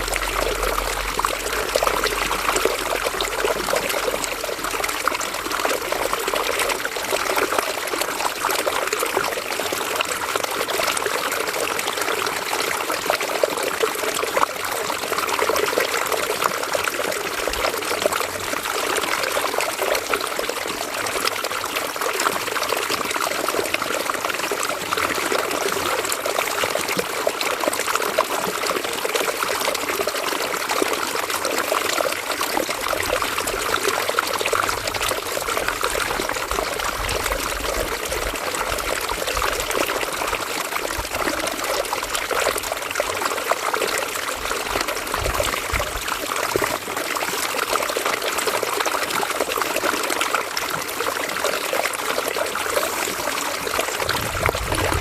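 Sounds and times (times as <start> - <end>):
river water trickling over stones: 0.0 - 55.0.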